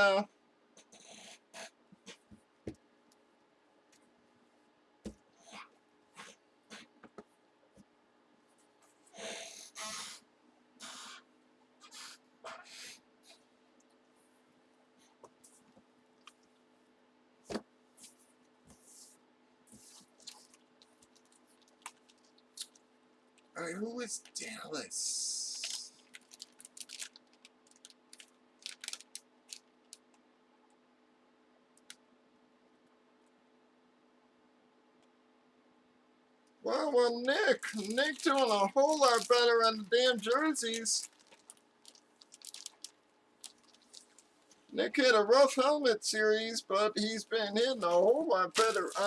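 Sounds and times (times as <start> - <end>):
low electrical hum: 0.0 - 49.0
cards and packaging rustling: 25.5 - 29.7, 37.2 - 44.7, 47.8 - 49.0.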